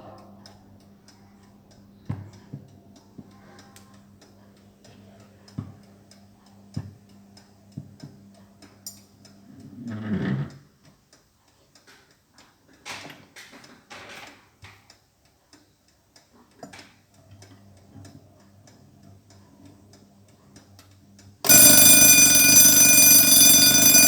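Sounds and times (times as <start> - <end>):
mechanical alarm clock ticking: 21.5 - 24.0.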